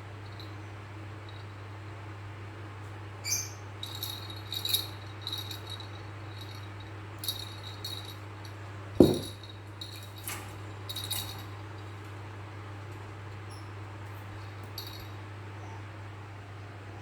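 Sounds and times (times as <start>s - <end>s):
toy rattling and rustling: 3.8s - 12.2s, 12.9s - 15.2s
cat pouncing thump: 9.0s - 9.3s.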